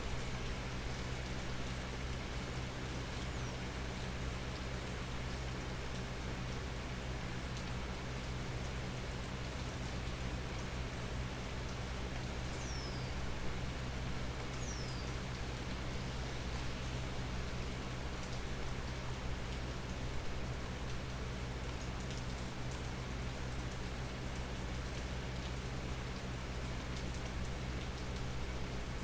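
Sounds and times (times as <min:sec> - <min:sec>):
rain falling through leaves: 0:00.0 - 0:29.0.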